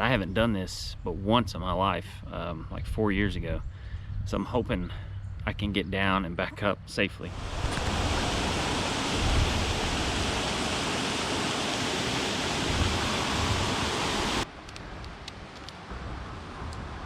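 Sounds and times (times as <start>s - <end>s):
river water rushing: 7.3s - 14.5s.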